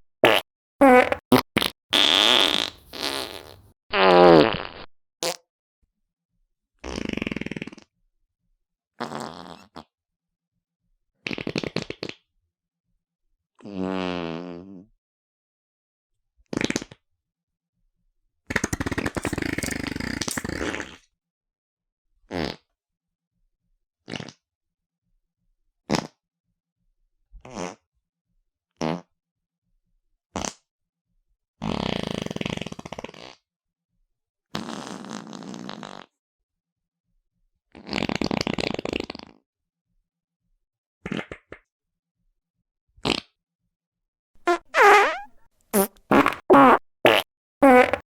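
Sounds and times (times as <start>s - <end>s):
fart sound effects: 0.2s - 5.4s, 18.6s - 20.9s, 44.4s - 48.0s.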